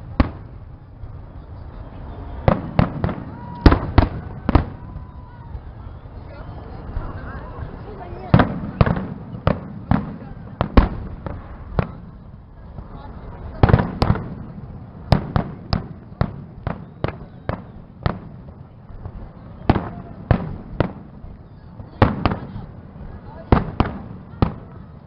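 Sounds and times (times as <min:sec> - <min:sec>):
fireworks bangs: 0:00.0 - 0:25.0.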